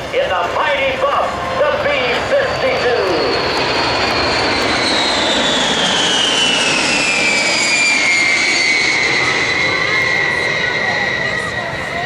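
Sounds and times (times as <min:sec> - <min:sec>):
jet bomber flying past: 0:00.0 - 0:12.0.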